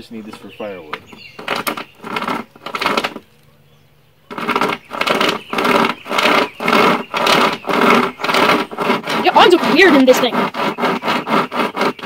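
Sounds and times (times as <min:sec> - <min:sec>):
chainsaw chain rasping through wood: 0:00.2 - 0:03.2, 0:04.3 - 0:12.0.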